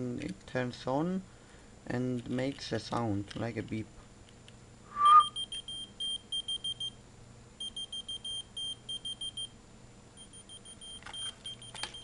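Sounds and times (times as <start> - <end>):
key finder beeping: 10.8 - 12.0.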